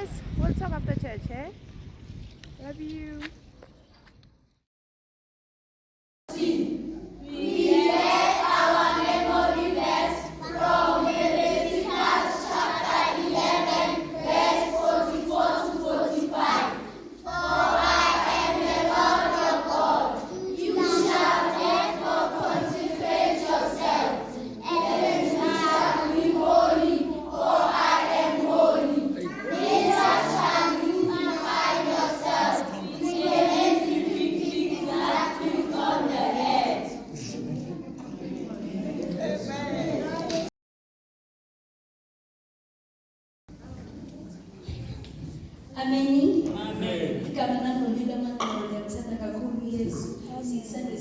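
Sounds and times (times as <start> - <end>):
group of voices singing: 6.3 - 37.3.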